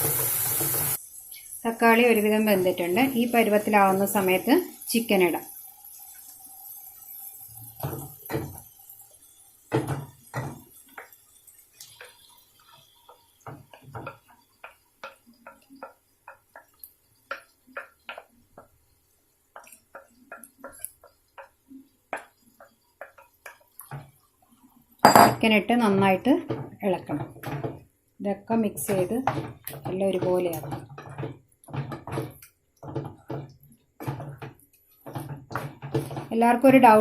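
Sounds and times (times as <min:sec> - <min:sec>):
spoon knocking against pan: 0:25.1 - 0:25.4.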